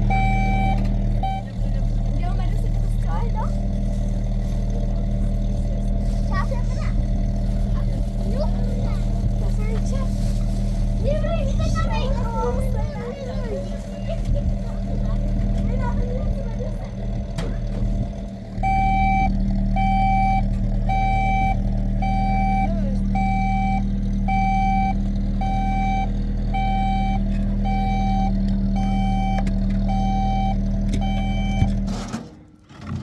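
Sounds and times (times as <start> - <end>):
reversing alarm beeping: 0.0 - 1.6, 18.6 - 31.9
vehicle engine running: 0.0 - 33.0.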